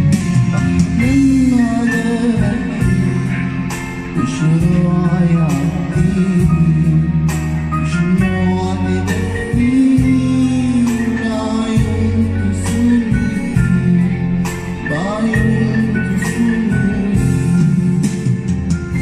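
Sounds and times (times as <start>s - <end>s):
instrumental backing track: 0.0s - 19.0s
man singing pop song: 0.0s - 19.0s.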